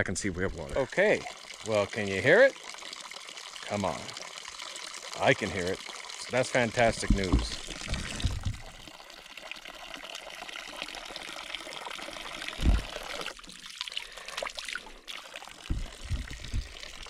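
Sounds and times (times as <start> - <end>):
water pouring from a pipe: 0.0 - 17.0
low thump: 7.0 - 8.7, 12.6 - 13.0, 15.7 - 17.0.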